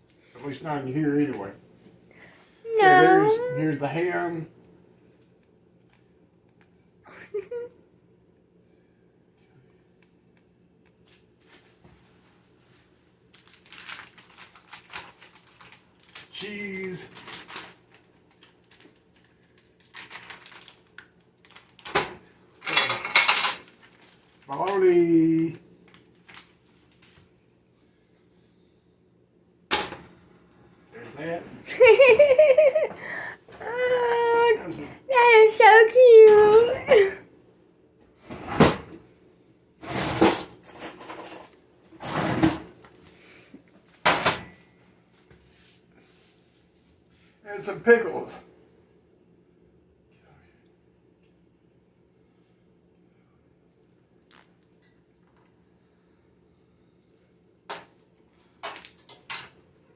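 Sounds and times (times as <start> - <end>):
hands rustling food wrappers: 13.2 - 21.9, 23.6 - 24.8, 25.8 - 27.3.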